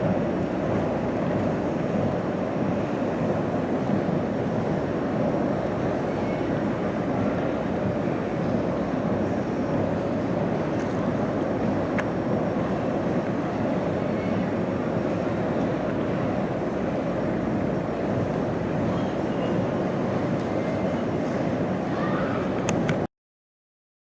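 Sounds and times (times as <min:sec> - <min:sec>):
metro train rumbling: 0:00.0 - 0:23.1.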